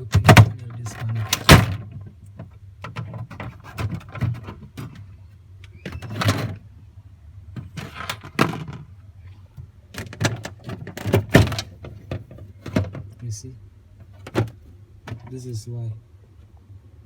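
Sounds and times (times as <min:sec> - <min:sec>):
plastic panel clicks and knocks: 0:00.0 - 0:05.0, 0:09.6 - 0:13.1, 0:14.1 - 0:15.3
plastic scraping and rustling: 0:00.0 - 0:05.1, 0:07.5 - 0:08.9, 0:09.9 - 0:13.2.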